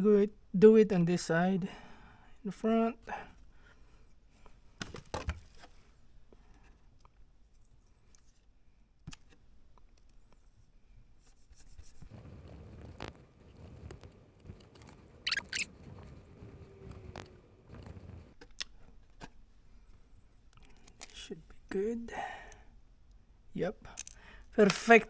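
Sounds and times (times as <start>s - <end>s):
sharp high-pitched scrape: 15.2s - 15.7s.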